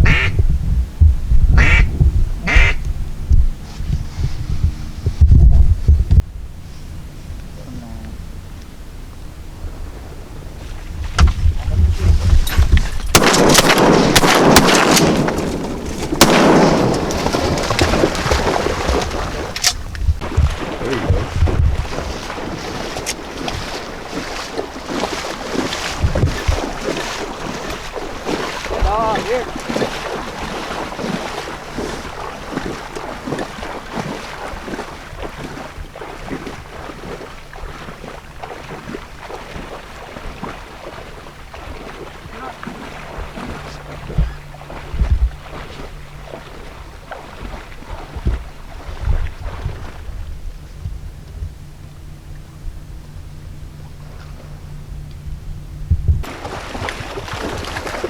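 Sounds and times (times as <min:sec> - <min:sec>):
wind buffeting microphone: 0:00.0 - 0:58.0
splashy water noise: 0:09.7 - 0:50.6, 0:56.2 - 0:58.0
shotgun blasts: 0:13.1 - 0:19.8.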